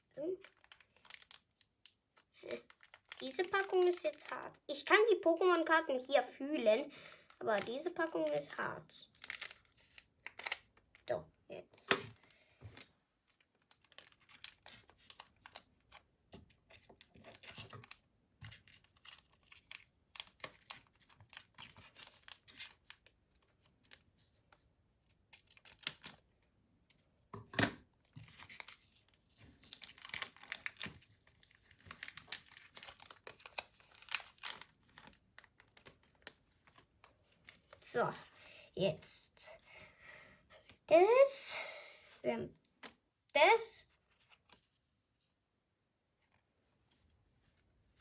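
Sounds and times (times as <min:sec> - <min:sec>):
foil wrapper tearing and crinkling: 0:00.4 - 0:04.9, 0:06.9 - 0:11.1, 0:12.8 - 0:16.1, 0:16.7 - 0:24.1, 0:25.3 - 0:26.2, 0:28.3 - 0:36.9
cards being handled: 0:27.6 - 0:38.4.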